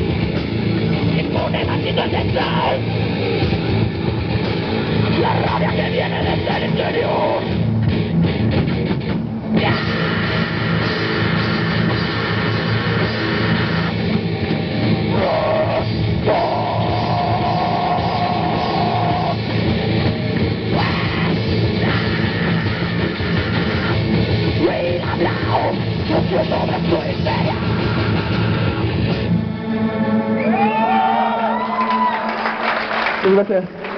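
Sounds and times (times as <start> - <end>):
drum kit pounding: 0.0 - 29.4
distorted electric guitars: 0.0 - 30.7.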